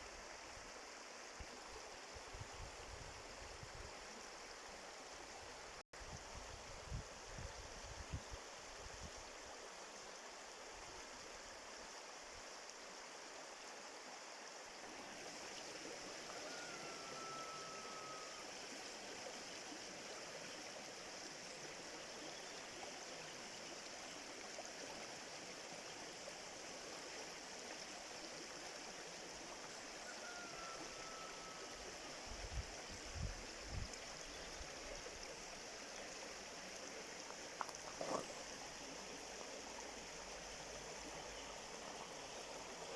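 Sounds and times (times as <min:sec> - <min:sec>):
stream rushing and babbling: 0:00.0 - 0:42.9
faint whistled notes: 0:16.4 - 0:18.4.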